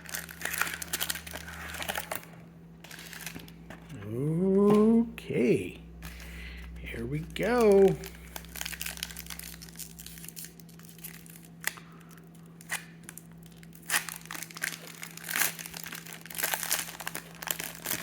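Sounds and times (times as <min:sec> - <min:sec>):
wrapper torn and crinkled: 0:00.0 - 0:03.6, 0:07.4 - 0:18.0.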